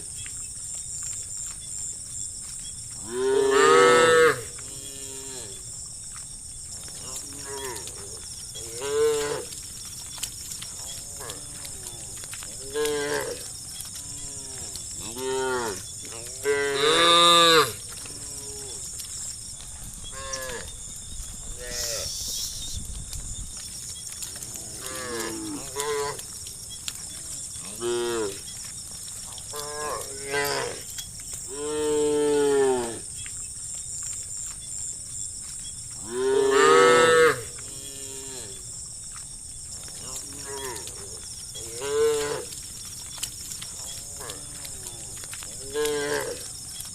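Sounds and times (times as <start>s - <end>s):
steady high hiss: 21.7s - 22.8s.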